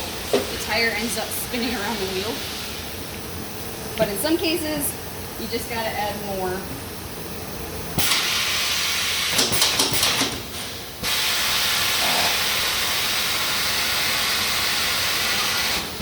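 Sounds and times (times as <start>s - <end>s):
compressed air hissing: 8.0s - 16.0s.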